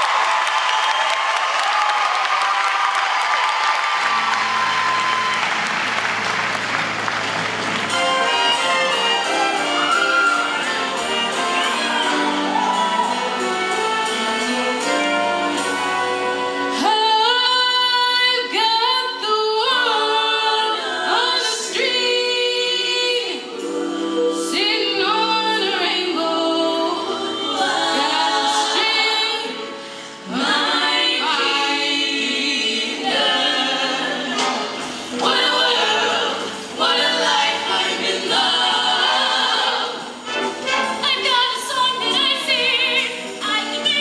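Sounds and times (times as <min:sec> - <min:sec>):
musical accompaniment: 0:00.0 - 0:44.0
choir singing in parts: 0:08.1 - 0:17.0, 0:19.6 - 0:44.0.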